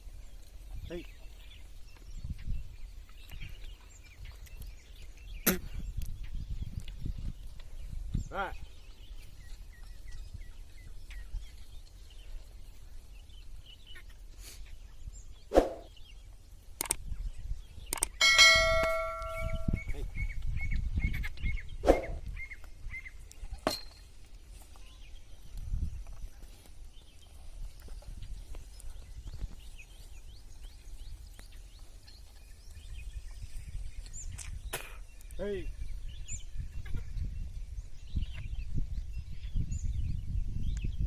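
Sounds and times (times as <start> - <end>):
metal bell ringing: 18.2 - 19.9
short calls: 18.2 - 20.0.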